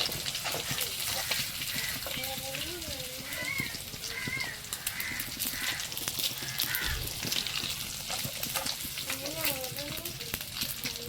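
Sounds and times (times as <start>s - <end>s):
fish roe sizzling in hot oil: 0.0s - 11.0s.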